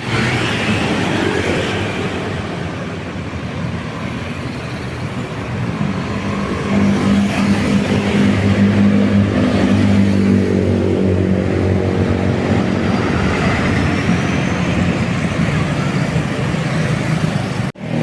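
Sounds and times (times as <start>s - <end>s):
road traffic rushing past: 0.0s - 18.0s.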